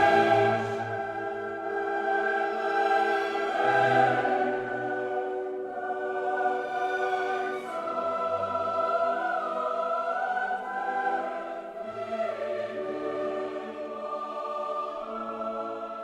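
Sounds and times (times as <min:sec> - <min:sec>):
orchestra playing: 0:00.0 - 0:07.8
choir singing long notes: 0:00.0 - 0:16.0.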